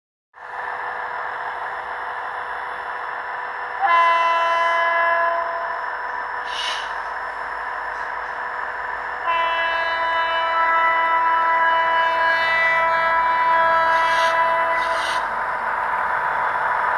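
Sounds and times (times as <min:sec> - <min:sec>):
locomotive rushing noise: 0:00.4 - 0:16.9
locomotive air horn blasts: 0:03.8 - 0:05.7, 0:09.2 - 0:15.3.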